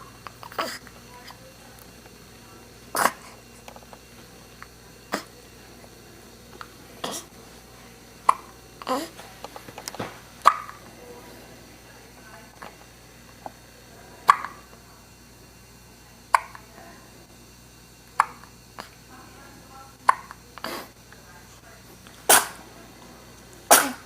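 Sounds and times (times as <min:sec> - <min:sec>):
person hiccuping: 0:02.9 - 0:03.3, 0:10.5 - 0:10.8, 0:18.2 - 0:18.4, 0:23.7 - 0:24.0.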